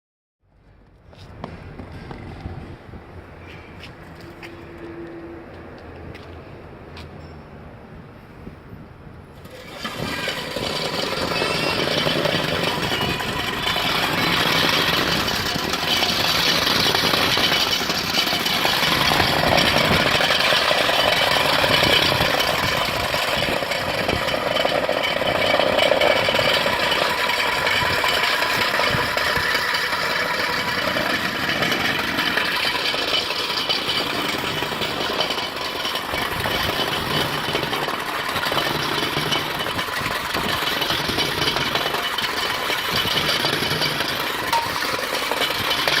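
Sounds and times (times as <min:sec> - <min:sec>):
concrete mixer running: 0:09.3 - 0:46.0.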